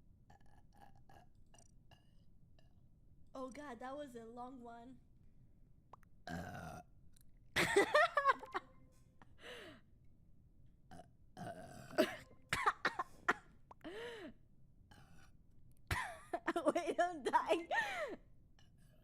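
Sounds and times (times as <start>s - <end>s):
person burping: 6.3s - 6.9s, 10.9s - 13.9s.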